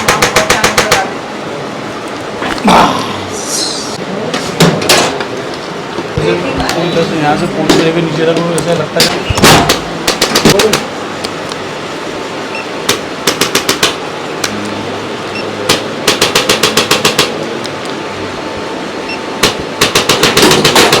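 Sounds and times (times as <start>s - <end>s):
steady background hum: 0.0s - 21.0s
quick sharp percussive strikes: 9.0s - 10.9s.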